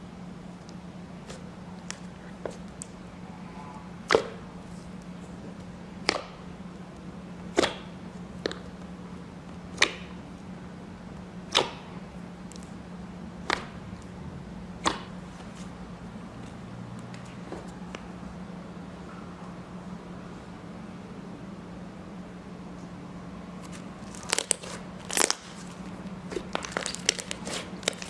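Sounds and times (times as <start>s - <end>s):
steady low hum: 0.0s - 28.0s
slime popping snaps: 6.0s - 6.4s.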